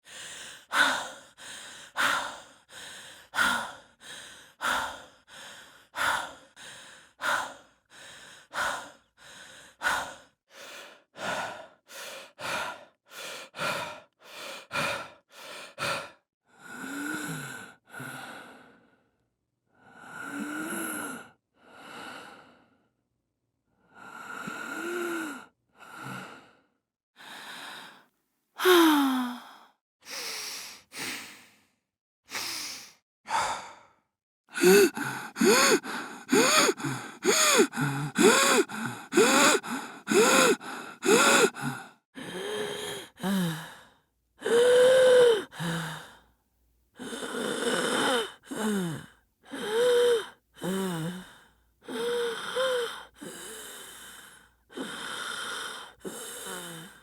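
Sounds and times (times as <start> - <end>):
heavy human breathing: 0.0 - 19.1, 23.9 - 46.4, 47.0 - 57.0
wheezing breaths: 24.0 - 31.7, 32.3 - 46.3, 47.0 - 57.0.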